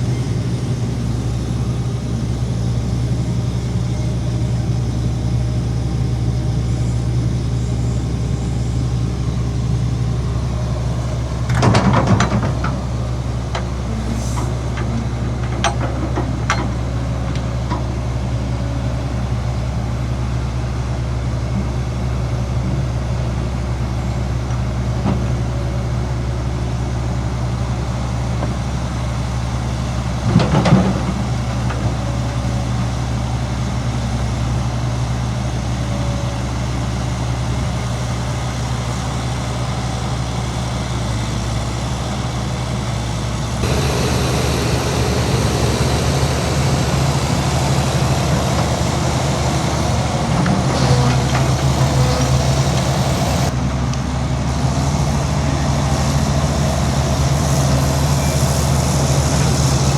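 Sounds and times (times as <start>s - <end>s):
diesel machinery drone: 0.0s - 59.9s
loud noise bursts: 43.6s - 50.3s.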